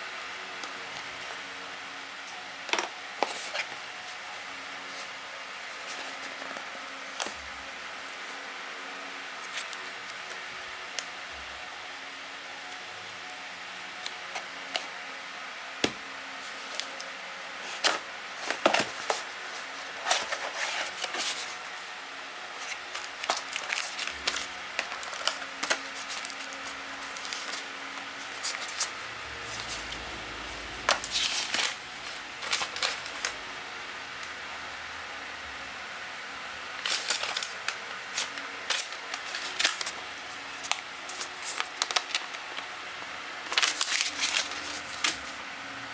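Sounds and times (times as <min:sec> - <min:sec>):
plastic and cardboard rustling: 0:17.6 - 0:21.9, 0:22.6 - 0:33.5, 0:36.8 - 0:42.7, 0:43.4 - 0:45.4.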